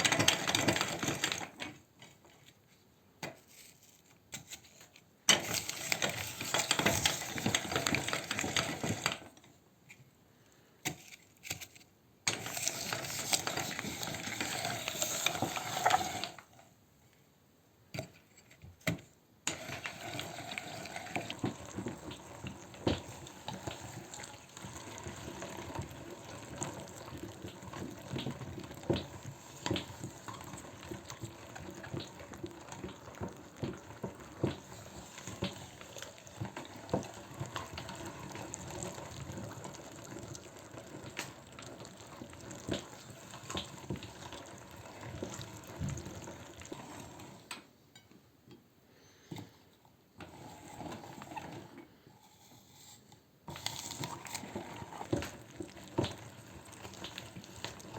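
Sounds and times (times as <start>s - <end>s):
meat grinder crunching apple: 0.0s - 1.7s, 5.3s - 9.3s, 12.3s - 16.5s, 19.5s - 47.5s, 53.5s - 57.9s.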